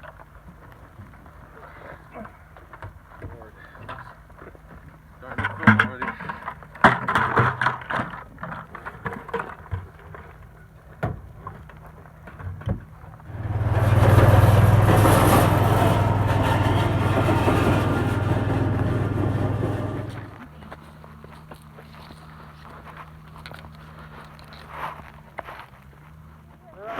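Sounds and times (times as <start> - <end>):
knocks and clatter: 13.3 - 20.4
machine humming and whirring: 13.3 - 20.4.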